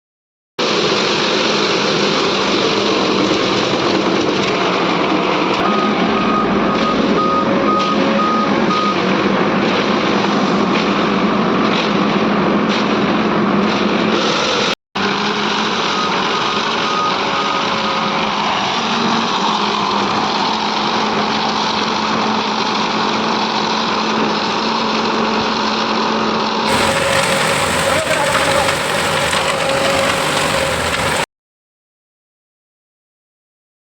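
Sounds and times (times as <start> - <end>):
reversing alarm beeping: 5.6 - 9.1, 15.8 - 18.2
concrete mixer running: 26.7 - 31.3.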